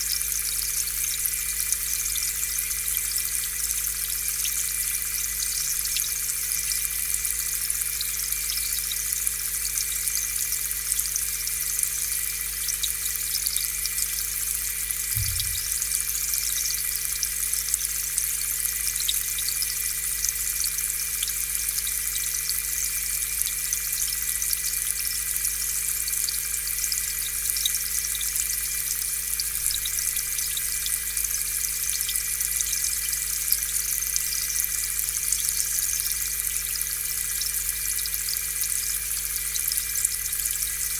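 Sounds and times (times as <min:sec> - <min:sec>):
air pump humming: 0:15.2 - 0:15.9
low thump: 0:15.2 - 0:15.9
air bubbles fizzing in water: 0:15.2 - 0:16.0.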